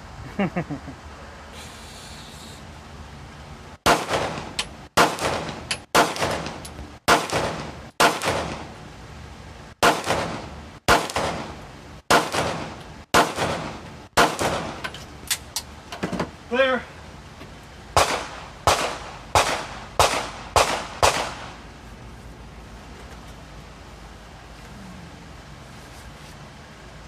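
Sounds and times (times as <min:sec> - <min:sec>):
gunshots with echo: 0:18.0 - 0:21.5.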